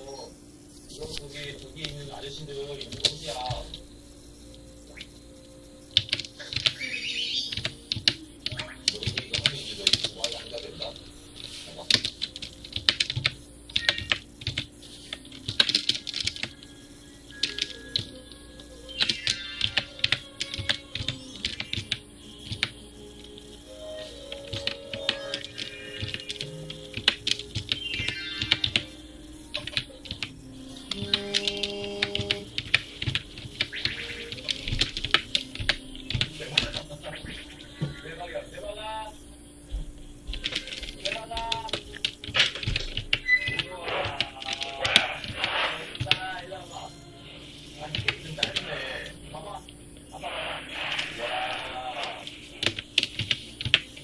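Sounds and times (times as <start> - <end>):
background music: 0.0 - 54.0
keyboard typing clicks: 4.5 - 37.0, 40.3 - 46.3, 52.6 - 54.0.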